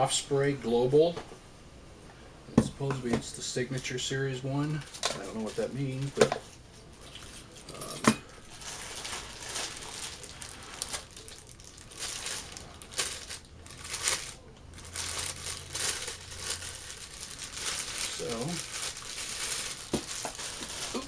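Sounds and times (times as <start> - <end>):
packaging crinkling and rustling: 4.6 - 7.6, 8.4 - 21.0.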